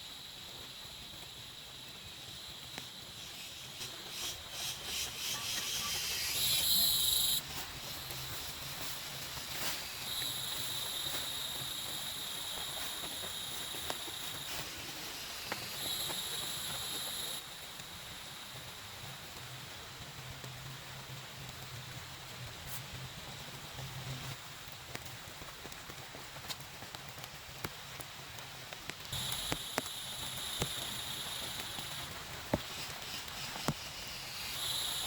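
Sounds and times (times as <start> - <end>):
steady hissing: 0.0 - 19.2, 29.0 - 35.0.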